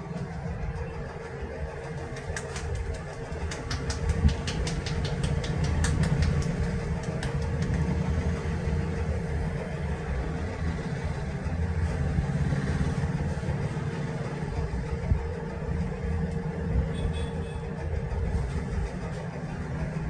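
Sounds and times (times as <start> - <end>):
steady low rumble: 0.0 - 20.0
sharp taps: 1.9 - 8.1.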